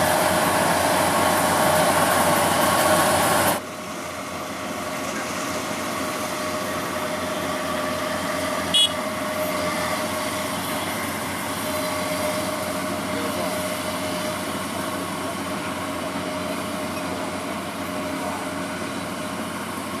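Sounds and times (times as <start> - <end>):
combine harvester engine drone: 0.0 - 20.0.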